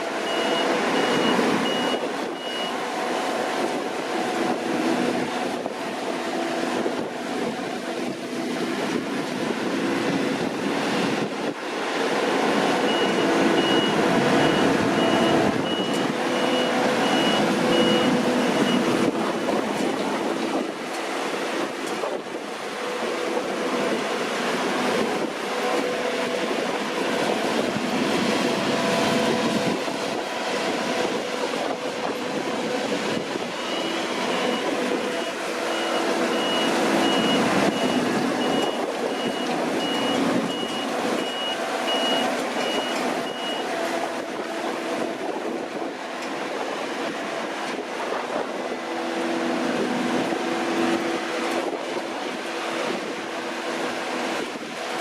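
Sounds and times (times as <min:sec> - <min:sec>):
combine harvester droning: 0:00.0 - 0:55.0
reversing alarm beeping: 0:00.2 - 0:02.8, 0:12.7 - 0:19.0, 0:33.6 - 0:43.7.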